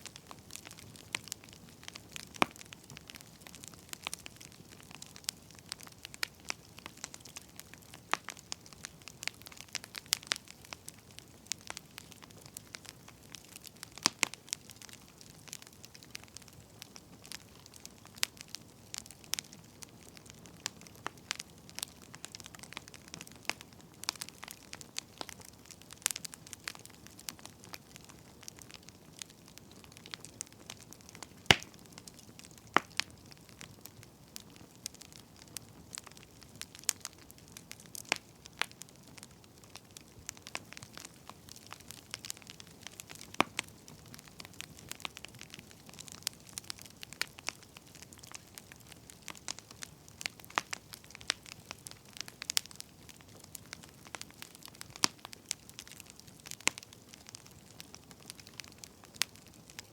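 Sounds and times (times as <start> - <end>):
firewood crackling and popping: 0.0 - 59.9.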